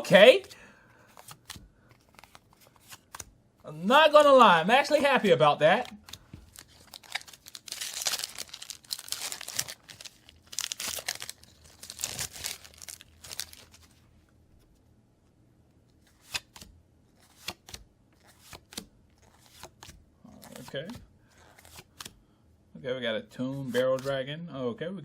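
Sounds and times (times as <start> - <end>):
foil wrapper tearing and crinkling: 6.5 - 13.8.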